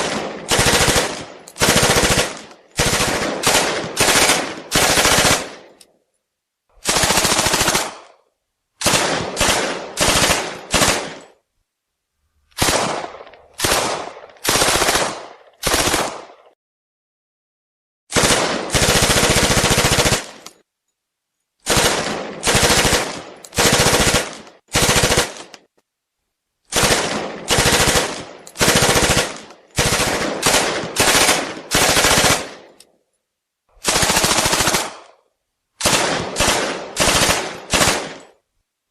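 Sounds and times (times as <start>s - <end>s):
submachine gun firing bursts: 0.0s - 5.7s, 6.8s - 8.1s, 8.8s - 11.2s, 12.6s - 16.4s, 18.1s - 20.4s, 21.6s - 25.5s, 26.7s - 32.7s, 33.8s - 35.2s, 35.8s - 38.3s.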